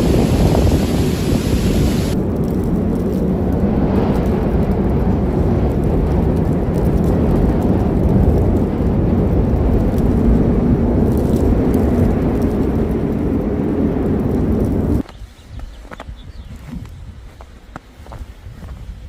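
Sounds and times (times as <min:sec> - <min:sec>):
low rumbling noise: 0:00.0 - 0:15.0.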